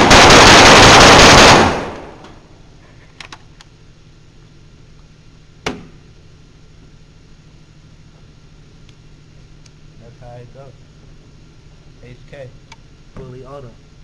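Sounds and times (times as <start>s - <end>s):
rapid pistol shots: 0.0s - 2.2s
sharp crack: 0.0s - 2.4s.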